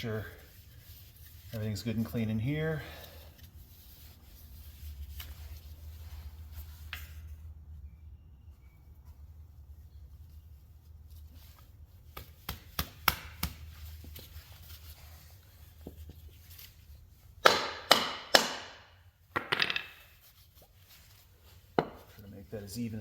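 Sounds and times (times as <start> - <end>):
hard knocks on wood block: 17.4 - 19.9.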